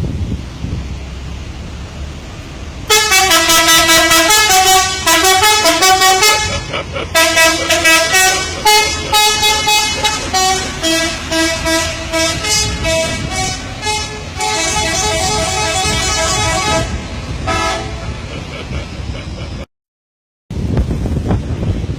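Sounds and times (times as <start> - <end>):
low engine rumble: 0.0 - 19.7
musical air horn tooting: 2.9 - 18.2.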